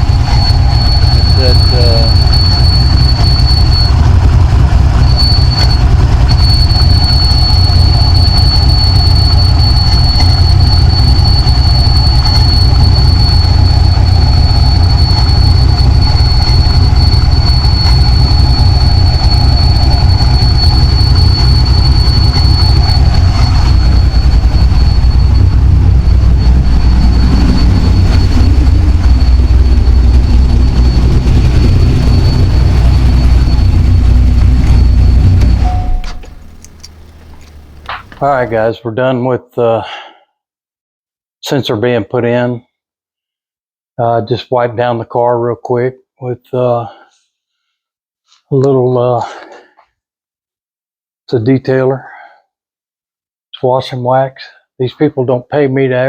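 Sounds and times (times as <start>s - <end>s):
car engine idling: 0.0s - 38.5s
high-pitched whistle: 0.0s - 38.6s.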